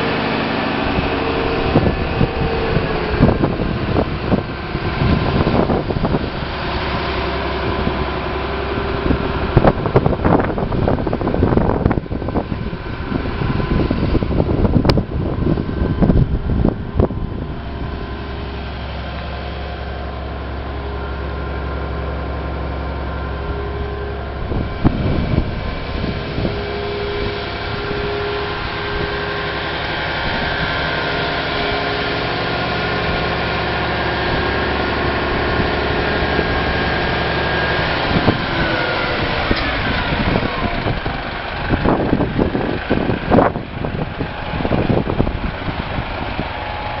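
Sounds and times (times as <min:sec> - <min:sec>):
diesel engine running: 0:00.0 - 0:47.0
whine falling in pitch: 0:13.6 - 0:41.2.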